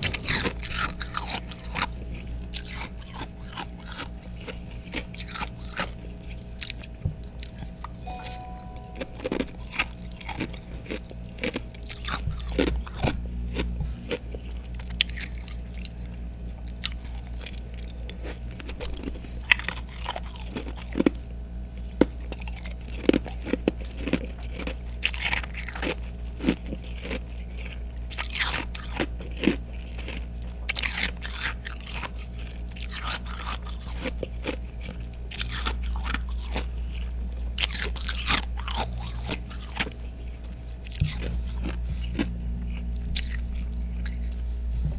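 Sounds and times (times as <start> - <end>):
crunching and chewing ice: 0.0 - 8.0, 8.9 - 44.9
low steady hum: 5.5 - 16.7, 38.8 - 44.9.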